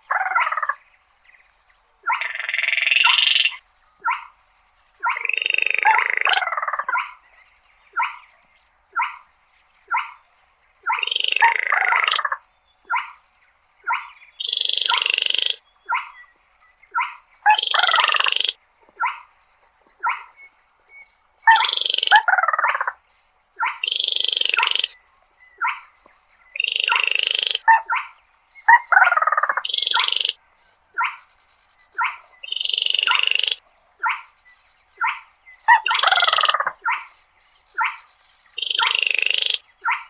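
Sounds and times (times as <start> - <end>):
bird croaking notes: 0.0 - 0.8, 2.0 - 4.4, 5.0 - 7.2, 7.9 - 8.3, 8.9 - 9.3, 9.9 - 10.2, 10.8 - 13.2, 13.8 - 16.2, 16.9 - 19.3, 21.4 - 23.0, 23.6 - 25.0, 25.6 - 25.9, 26.5 - 30.4, 31.0 - 31.3, 32.0 - 34.4, 35.0 - 40.0
bird rattling calls: 5.0 - 7.2, 13.9 - 16.1, 17.0 - 19.3, 23.6 - 25.0, 26.6 - 30.4, 32.0 - 34.4, 35.0 - 37.2, 37.8 - 40.0.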